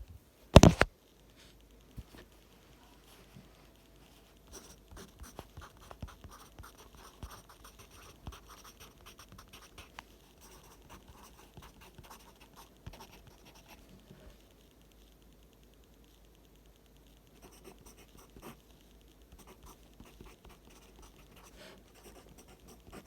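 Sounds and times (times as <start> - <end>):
pencil writing on paper: 4.5 - 13.8, 19.3 - 23.0.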